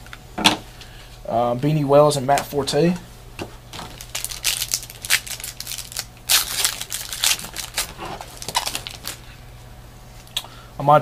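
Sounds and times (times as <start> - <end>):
foil wrapper crinkling: 3.7 - 9.3.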